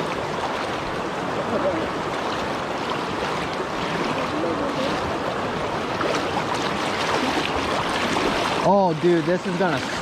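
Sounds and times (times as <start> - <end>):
floodwater rushing: 0.0 - 10.0.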